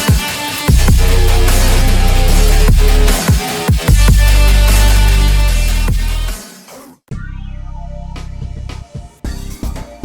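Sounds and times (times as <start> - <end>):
loud electronic music: 0.0 - 10.0
steady bass and plucked notes: 0.7 - 3.2, 3.9 - 6.3, 7.1 - 10.0.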